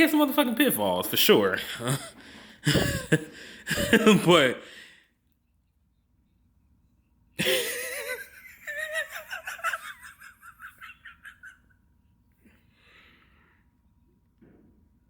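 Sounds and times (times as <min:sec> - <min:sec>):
person laughing heartily: 0:01.6 - 0:04.6, 0:07.4 - 0:11.9.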